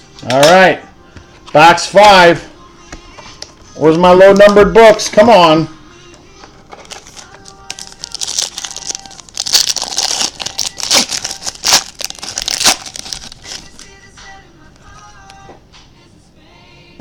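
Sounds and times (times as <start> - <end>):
wrapping tearing: 6.4 - 14.0
wrapping crinkling: 6.4 - 14.1.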